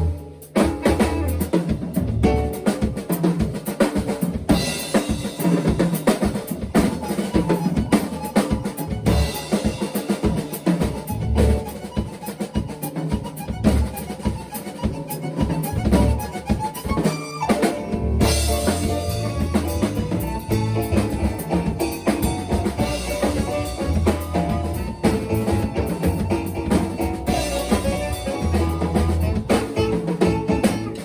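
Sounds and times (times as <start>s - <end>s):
bass drum and snare hits: 0.0s - 7.2s, 8.9s - 11.7s, 17.7s - 31.0s
live band playing: 0.0s - 31.0s.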